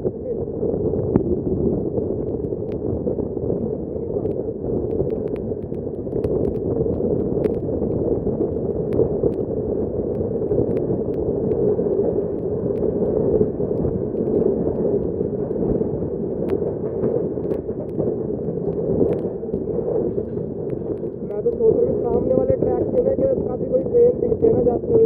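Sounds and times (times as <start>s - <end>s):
faint clicks: 4.2s - 9.5s, 10.1s - 15.6s, 17.4s - 23.1s.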